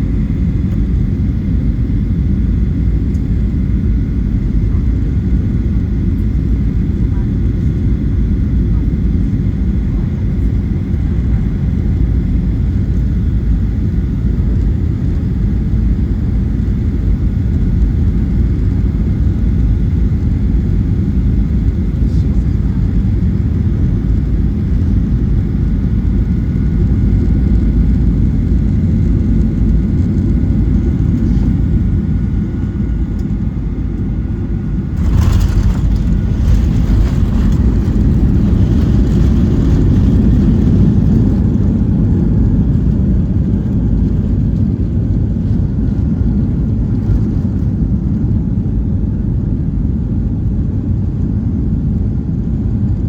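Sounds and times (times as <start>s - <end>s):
airplane cabin rumble: 0.0s - 53.0s
touchdown jolt: 34.9s - 40.6s.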